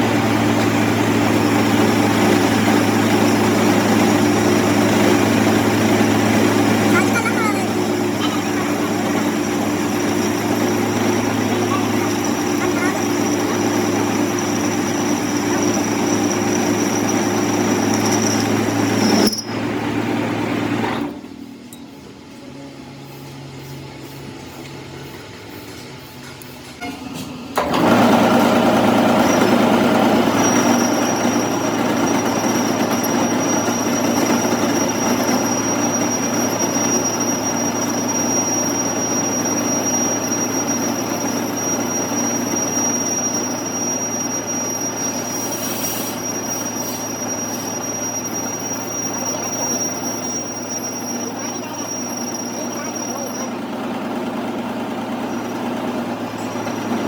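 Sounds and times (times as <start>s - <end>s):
metalworking machine running: 0.0s - 57.0s
thin high whine: 1.4s - 20.0s, 29.2s - 53.6s.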